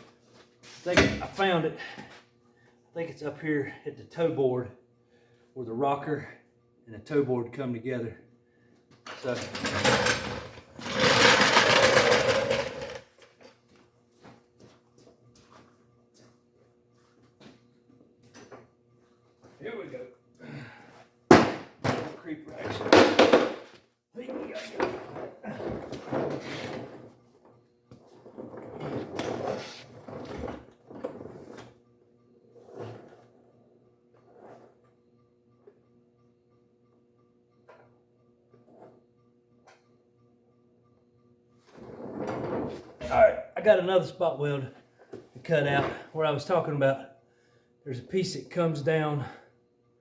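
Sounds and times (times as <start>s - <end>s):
creeper rolling and scraping on floor: 9.1s - 13.1s, 28.0s - 31.8s, 41.6s - 43.0s.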